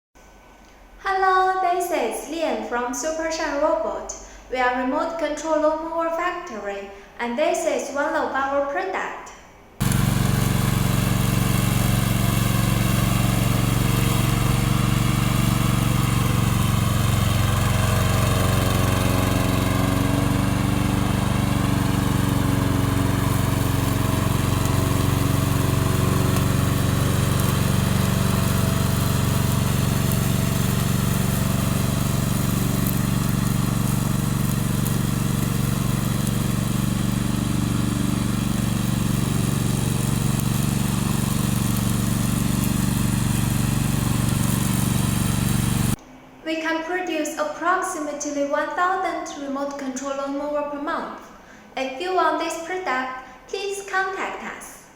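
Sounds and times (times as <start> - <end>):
lawn mower engine running: 9.8 - 46.0.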